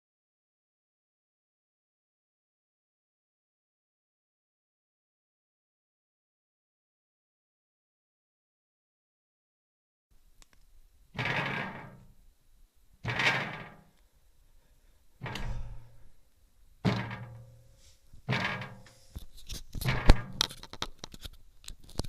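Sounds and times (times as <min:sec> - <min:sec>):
rattling ring: 0:11.2 - 0:12.2, 0:13.1 - 0:13.9, 0:16.9 - 0:19.1
sharp clicks and knocks: 0:13.0 - 0:14.0, 0:16.8 - 0:22.0.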